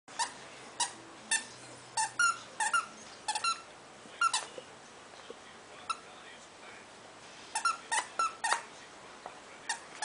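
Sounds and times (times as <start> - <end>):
squeaky dog toy squeaks: 0.1 - 4.6, 7.5 - 8.6.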